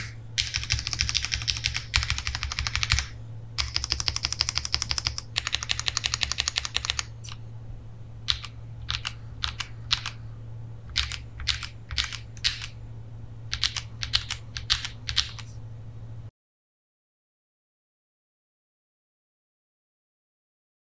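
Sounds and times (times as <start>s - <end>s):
mechanical keyboard typing: 0.0s - 7.2s, 8.3s - 10.2s, 10.9s - 12.8s, 13.5s - 15.5s.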